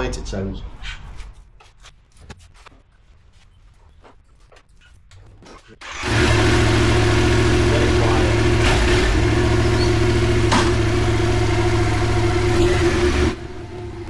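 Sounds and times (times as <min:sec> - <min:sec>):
motorcycle engine starting and idling: 0:05.8 - 0:14.0.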